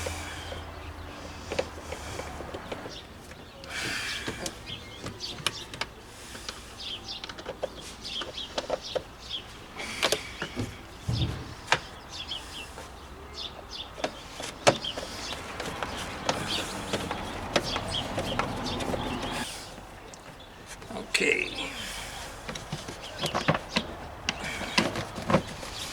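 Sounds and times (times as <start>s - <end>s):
birds chirping: 0.0s - 25.9s
heavy thump: 10.6s - 12.7s.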